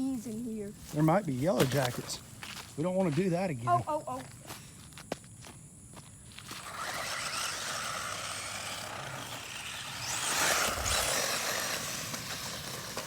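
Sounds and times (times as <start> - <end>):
rc truck motor and tyres hissing: 6.3 - 13.0.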